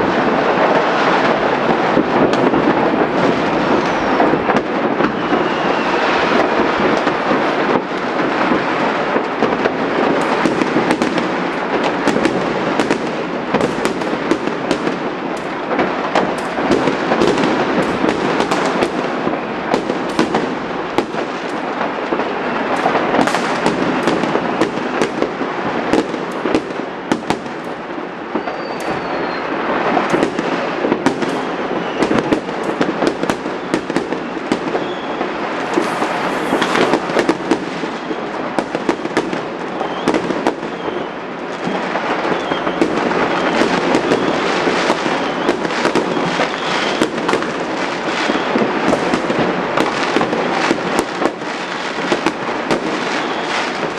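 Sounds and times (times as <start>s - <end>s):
firecrackers banging and popping: 0.0s - 53.9s
rocket whistle: 3.7s - 6.5s, 28.3s - 29.6s, 31.2s - 32.5s, 33.6s - 38.3s, 39.8s - 41.3s, 42.2s - 47.2s, 53.0s - 53.8s.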